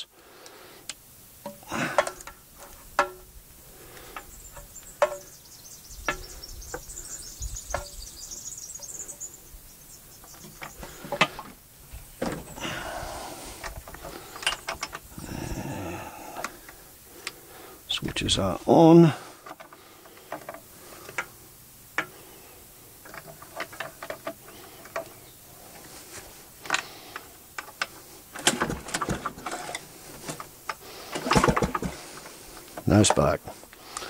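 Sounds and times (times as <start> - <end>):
tools and metal parts clicking: 13.6 - 15.1, 23.0 - 25.2
rustling scraping handling noise: 22.9 - 34.0.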